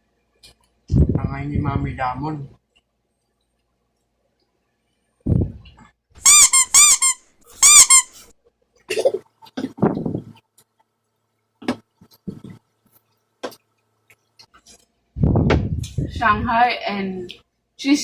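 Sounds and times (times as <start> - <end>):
high-pitched squeaks: 6.2 - 8.2.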